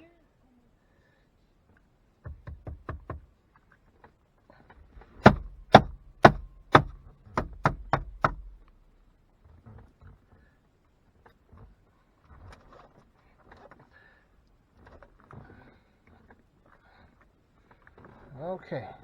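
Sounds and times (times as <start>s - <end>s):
knocking on car radio faceplate: 2.3s - 3.2s, 5.2s - 8.6s.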